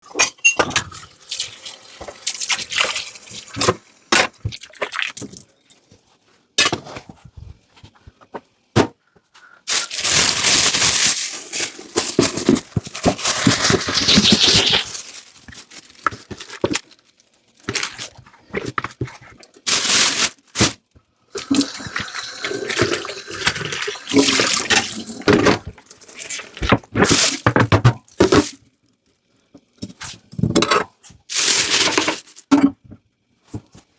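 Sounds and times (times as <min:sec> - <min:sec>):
dishes and utensils clinking: 0:00.1 - 0:01.4
tap water running: 0:00.7 - 0:05.4, 0:12.0 - 0:15.0, 0:21.3 - 0:27.4.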